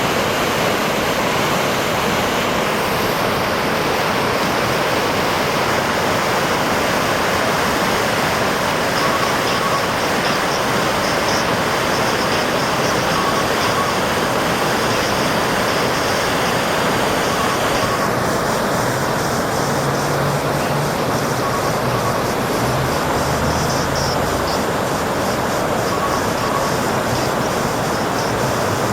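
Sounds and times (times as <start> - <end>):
floodwater rushing: 0.0 - 28.9.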